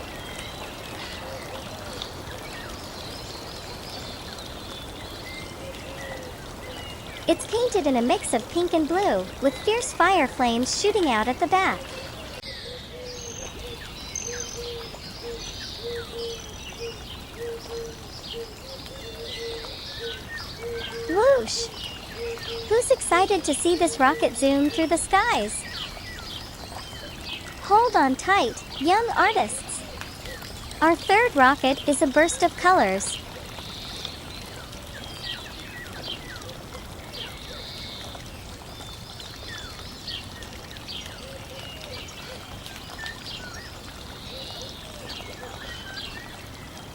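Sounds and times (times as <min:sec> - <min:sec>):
steady hiss of flowing water: 0:00.0 - 0:46.9
birds chirping: 0:05.9 - 0:34.4.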